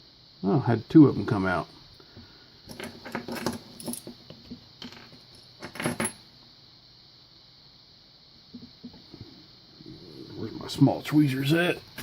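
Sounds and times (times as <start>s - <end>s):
small metal parts clinking: 2.7s - 6.2s.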